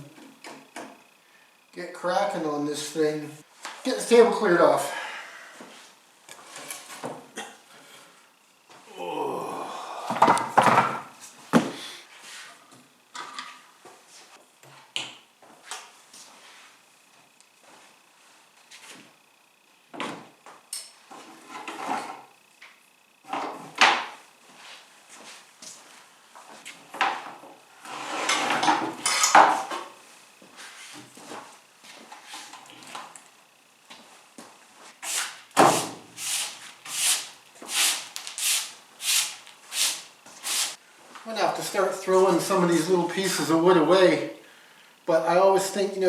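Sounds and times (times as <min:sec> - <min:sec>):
brush sweeping a table: 0:12.1 - 0:12.6, 0:30.5 - 0:31.2, 0:34.8 - 0:40.8.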